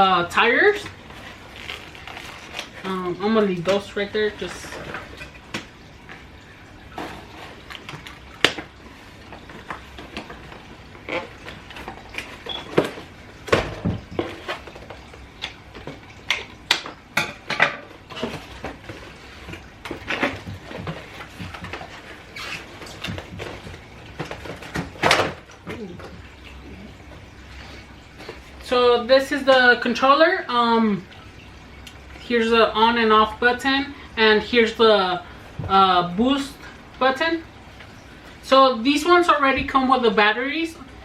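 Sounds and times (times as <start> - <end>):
plastic and cardboard rustling: 0.6 - 17.0, 17.8 - 28.8.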